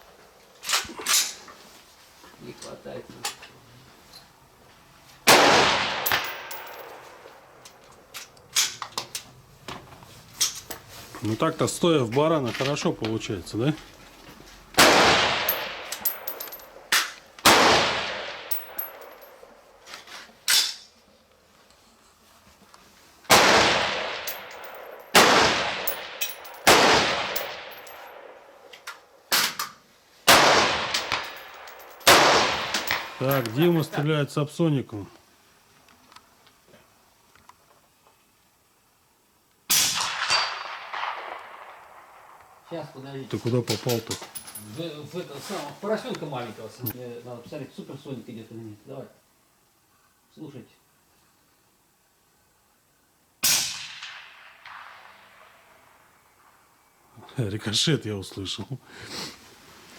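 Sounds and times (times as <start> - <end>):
rifle shot with echo: 5.3 - 7.0, 14.8 - 16.0, 17.4 - 18.9, 23.3 - 28.4, 30.3 - 33.2, 39.7 - 42.6, 53.4 - 55.7.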